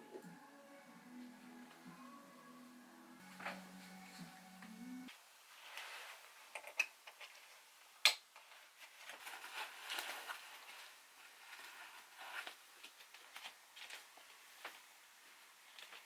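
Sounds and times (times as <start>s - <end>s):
music: 0.0s - 5.1s
rustling with small clicks: 5.6s - 16.0s.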